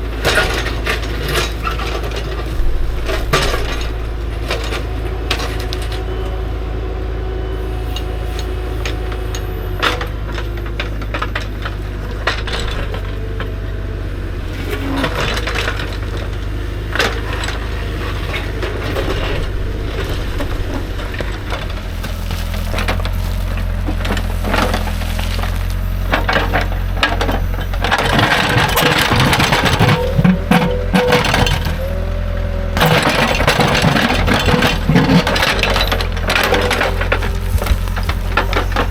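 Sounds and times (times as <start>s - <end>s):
excavator diesel engine running: 0.0s - 38.9s
bucket scraping and knocking rocks: 0.3s - 6.0s, 18.4s - 38.9s
clinks and cracks: 21.2s - 38.9s.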